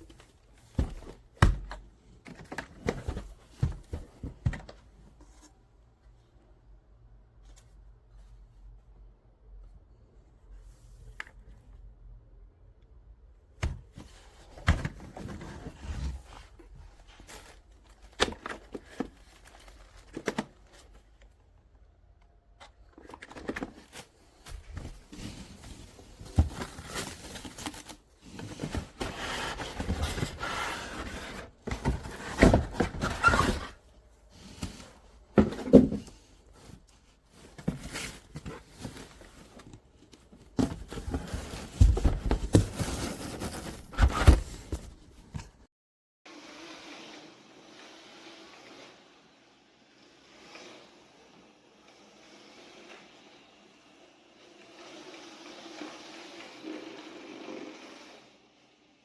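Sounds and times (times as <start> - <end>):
rustling and scraping: 13.9 - 21.4, 22.6 - 45.7.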